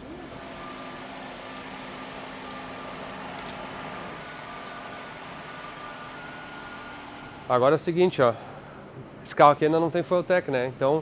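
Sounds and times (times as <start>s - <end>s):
car engine idling: 0.0s - 8.7s
faint whining tones: 0.0s - 9.3s.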